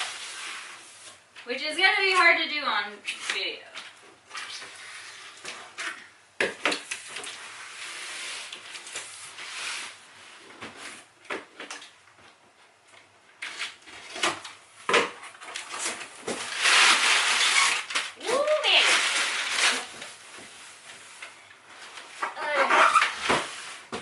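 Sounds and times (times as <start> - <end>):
cardboard scraping rustle: 15.4 - 24.0.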